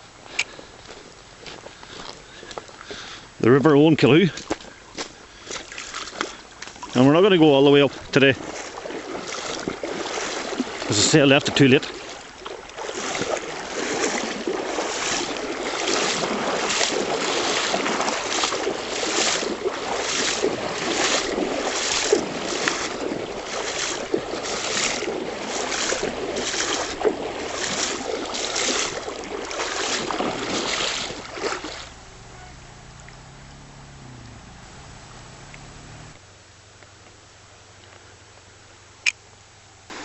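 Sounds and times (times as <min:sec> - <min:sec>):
river water rushing: 0:05.4 - 0:36.6
swishing footsteps: 0:11.9 - 0:33.6.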